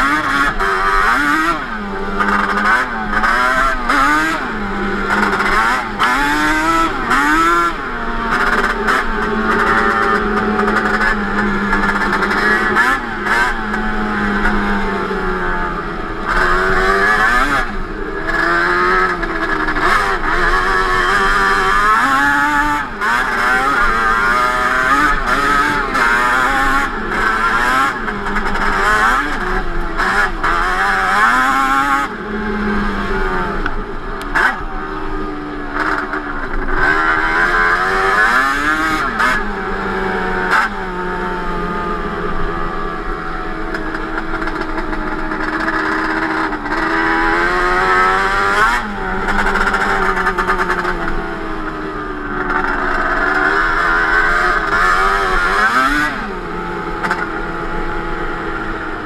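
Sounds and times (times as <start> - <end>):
two-stroke engine revving: 0.0 - 59.0.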